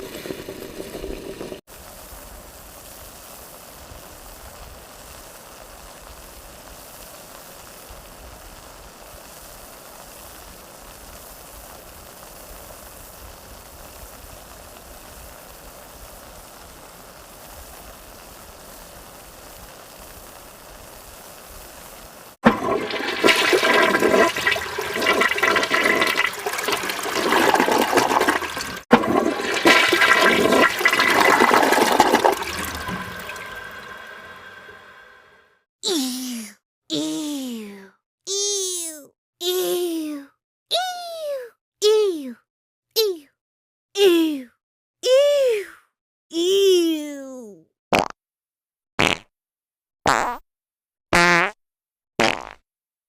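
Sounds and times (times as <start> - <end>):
faint steady hiss: 1.7 - 22.4
water rushing: 22.4 - 35.4.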